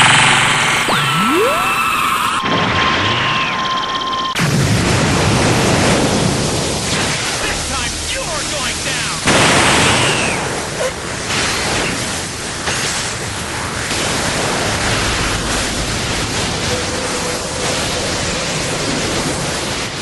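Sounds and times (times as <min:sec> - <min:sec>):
steady rushing energy blast: 0:05.1 - 0:20.0.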